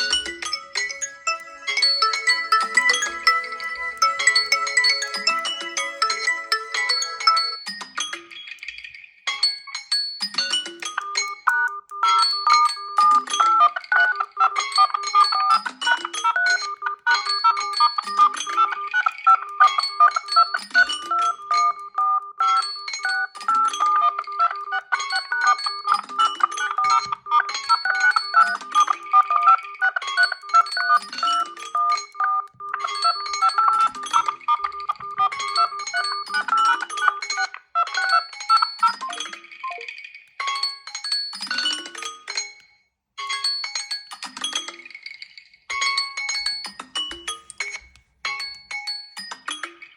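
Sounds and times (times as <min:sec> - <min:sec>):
phone alert tones: 0:00.0 - 0:07.7, 0:10.9 - 0:39.9.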